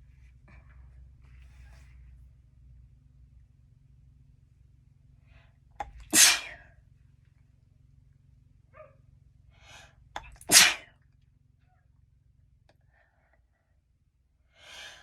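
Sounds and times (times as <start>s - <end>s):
person sneezing: 6.0s - 6.6s, 10.5s - 10.9s.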